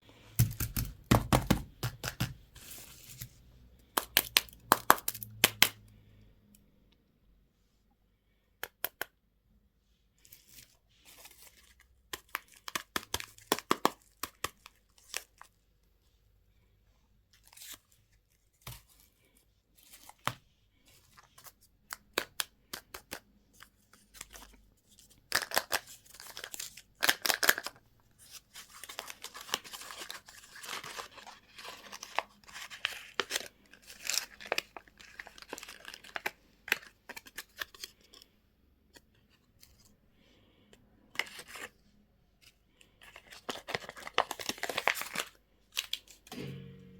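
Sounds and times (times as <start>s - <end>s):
packaging tearing and crinkling: 25.3s - 27.8s, 28.6s - 38.0s, 43.2s - 46.2s.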